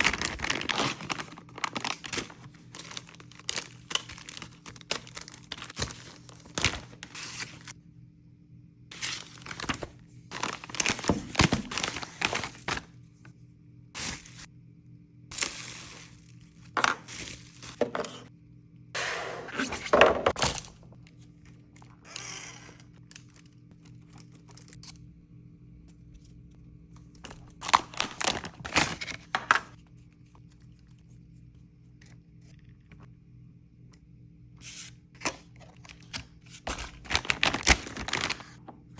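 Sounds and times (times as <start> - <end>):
cardboard and plastic rustling: 0.0 - 7.7, 8.9 - 12.9, 15.4 - 18.3, 27.1 - 29.8, 34.7 - 38.9.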